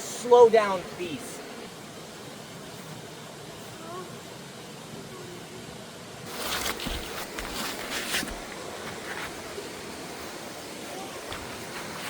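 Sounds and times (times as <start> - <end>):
rushing water: 0.0 - 12.0
footsteps on gravel: 6.3 - 9.4.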